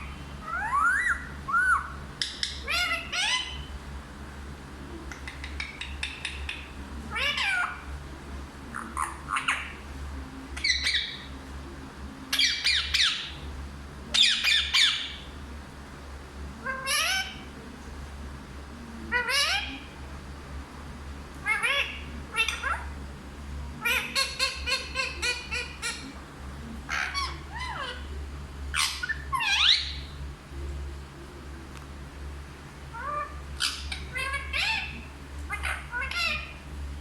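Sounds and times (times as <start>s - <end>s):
parrot squawking: 0.4s - 3.6s, 5.3s - 7.9s, 8.7s - 9.8s, 10.6s - 11.3s, 12.4s - 13.4s, 14.1s - 15.2s, 16.6s - 17.4s, 19.1s - 19.8s, 21.4s - 22.9s, 23.8s - 26.1s, 26.9s - 28.1s, 28.7s - 30.1s, 32.9s - 36.6s.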